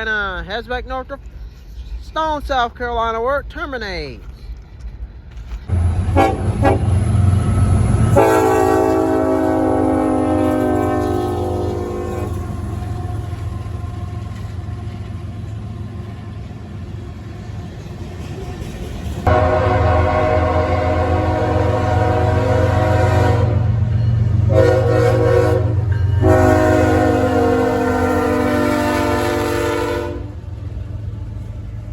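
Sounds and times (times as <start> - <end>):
diesel locomotive rumbling: 0.0 - 31.9
train air horn blasts: 6.1 - 7.1, 8.0 - 13.5, 19.3 - 30.4.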